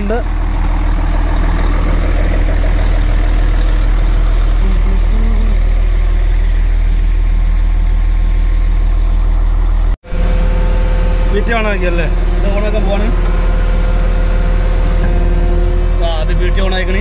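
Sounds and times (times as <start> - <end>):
diesel engine idling: 0.0 - 17.0.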